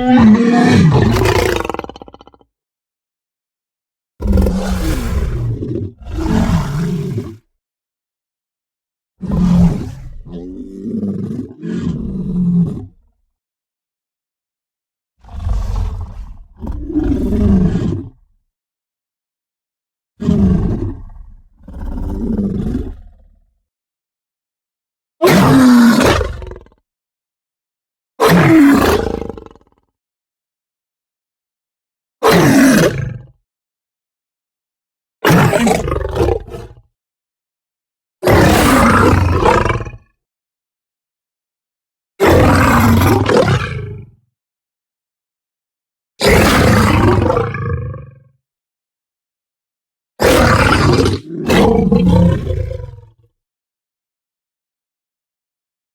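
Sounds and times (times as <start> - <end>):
deep big cat roars: 0.0 - 2.5, 4.2 - 7.4, 9.2 - 13.1, 15.2 - 18.3, 20.2 - 23.5, 25.2 - 26.8, 28.3 - 29.9, 32.4 - 33.4, 35.2 - 37.0, 38.2 - 40.2, 42.2 - 44.2, 46.2 - 48.4, 50.2 - 53.3.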